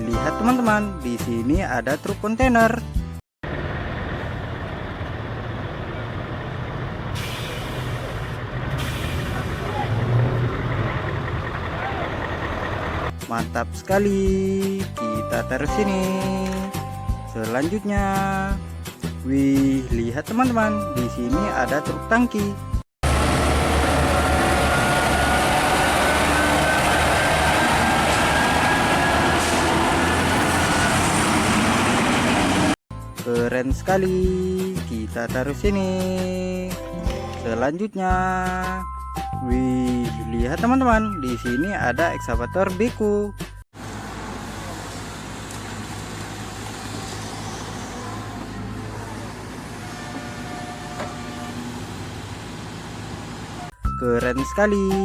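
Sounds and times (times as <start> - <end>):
truck engine rumbling: 3.4 - 33.1, 43.3 - 53.9
hiss: 7.2 - 8.2.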